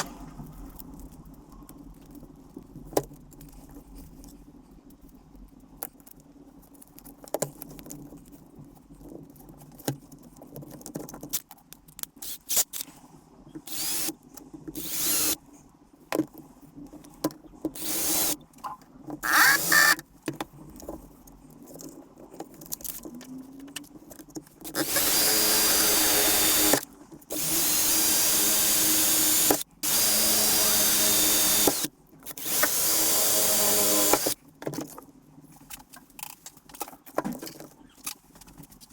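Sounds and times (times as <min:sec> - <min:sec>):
handheld power tool whirring: 0:13.7 - 0:14.1, 0:14.8 - 0:15.4, 0:17.8 - 0:18.4, 0:19.2 - 0:20.0, 0:24.7 - 0:34.4.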